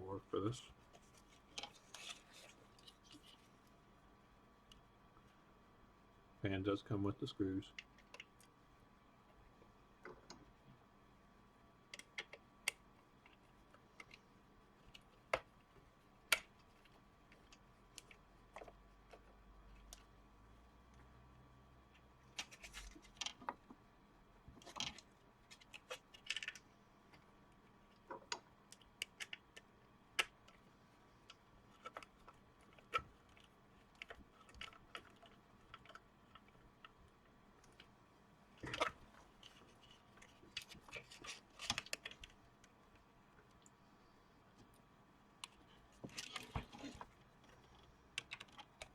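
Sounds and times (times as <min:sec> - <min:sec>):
small parts clicking and tapping: 0:14.8 - 0:20.2, 0:21.9 - 0:23.8, 0:24.5 - 0:37.9, 0:44.6 - 0:48.9.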